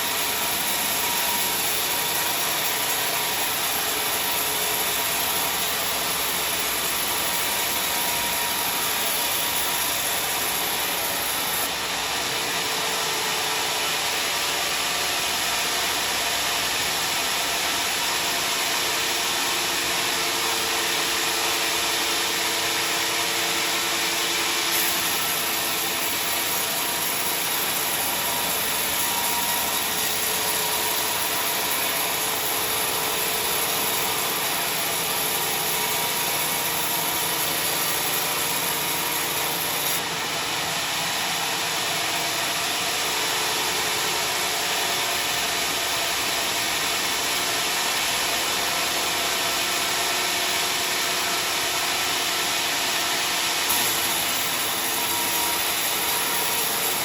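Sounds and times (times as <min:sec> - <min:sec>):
sawmill machine hum: 0:00.0 - 0:57.0.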